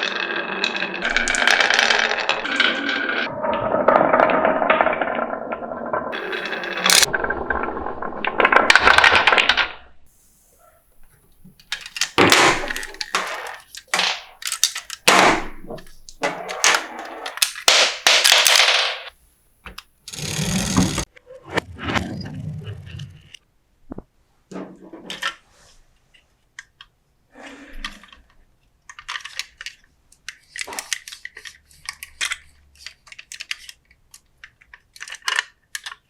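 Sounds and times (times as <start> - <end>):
marbles rolling on wooden track: 0.0 - 9.7, 11.1 - 19.1, 19.7 - 21.1.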